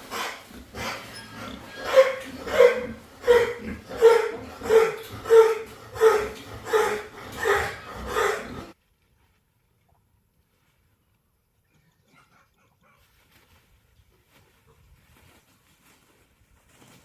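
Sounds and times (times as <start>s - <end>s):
dog barking: 1.8s - 8.7s.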